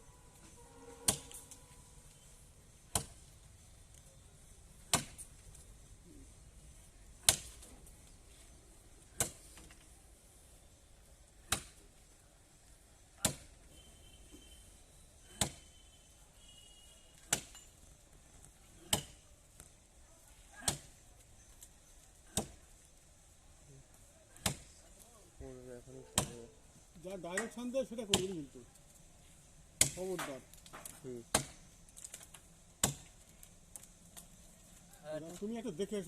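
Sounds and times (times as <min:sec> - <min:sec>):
axe chopping wood: 0:01.0 - 0:01.4, 0:02.9 - 0:03.3, 0:04.8 - 0:05.3, 0:07.2 - 0:07.8, 0:09.1 - 0:09.6, 0:11.4 - 0:11.8, 0:13.2 - 0:13.6, 0:15.2 - 0:15.7, 0:17.2 - 0:17.7, 0:18.8 - 0:19.2, 0:20.6 - 0:21.0, 0:22.2 - 0:22.6, 0:24.3 - 0:24.8, 0:26.2 - 0:26.4, 0:27.4 - 0:28.4, 0:29.8 - 0:31.6, 0:32.8 - 0:33.2.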